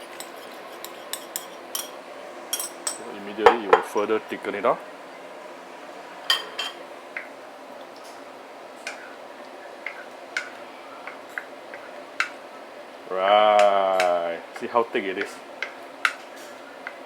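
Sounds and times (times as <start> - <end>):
low steady background noise: 0.0 - 17.0
utensil knocking against pan: 3.4 - 4.0, 13.6 - 14.7.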